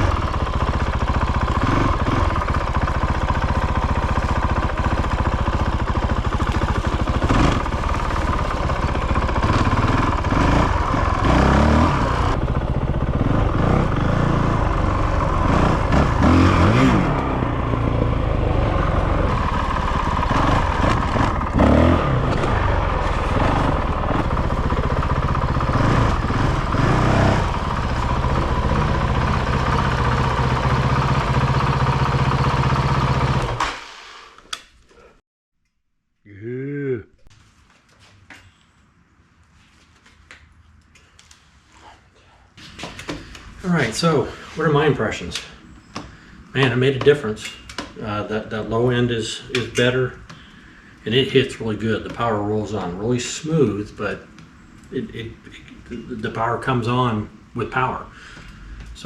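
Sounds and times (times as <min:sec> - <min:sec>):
dirt bike engine revving: 0:00.0 - 0:34.3.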